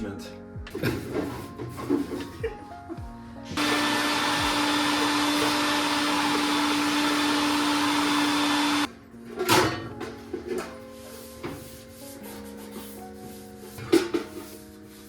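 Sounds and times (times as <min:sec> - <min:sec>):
cordless drill spinning brush: 0:03.6 - 0:08.9.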